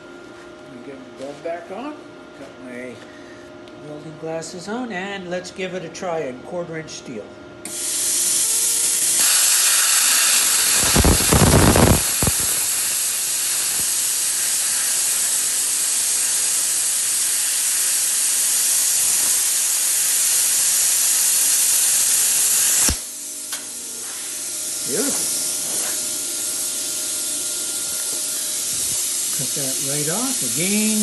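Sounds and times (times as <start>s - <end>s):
arc cutting through steel: 7.6s - 31.0s
plasma cutter air hissing: 7.7s - 31.0s.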